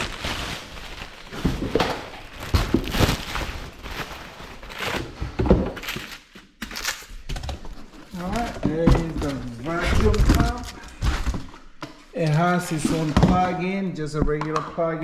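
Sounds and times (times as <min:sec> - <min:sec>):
cardboard box rustling: 0:07.7 - 0:11.5.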